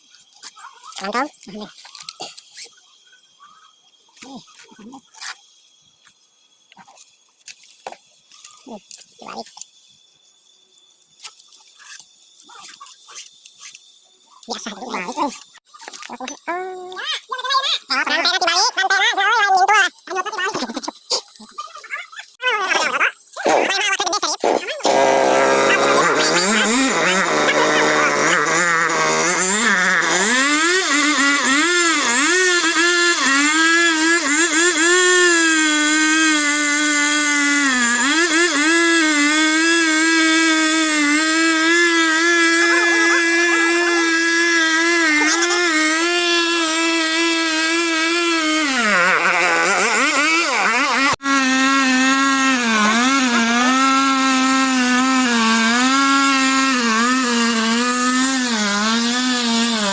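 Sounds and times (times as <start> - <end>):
chainsaw engine at high revs: 23.4 - 23.8, 24.4 - 59.9.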